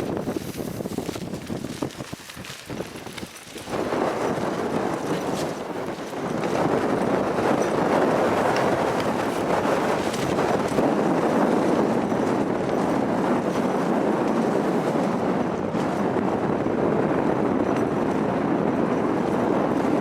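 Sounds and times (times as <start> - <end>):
tent fabric shaking: 0.0 - 15.1
strong wind gusts: 0.0 - 20.0.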